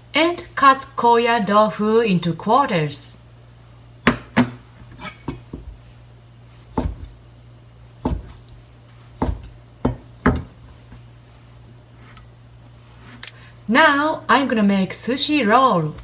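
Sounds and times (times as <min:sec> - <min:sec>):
knife knocking on cutting board: 0:04.1 - 0:04.6, 0:06.8 - 0:07.1, 0:08.0 - 0:08.4, 0:09.2 - 0:10.6.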